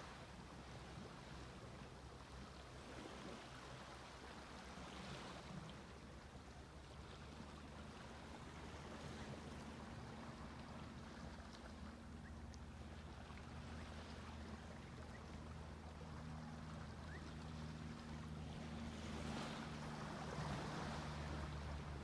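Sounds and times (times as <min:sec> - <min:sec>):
low hum: 0:07.9 - 0:22.0.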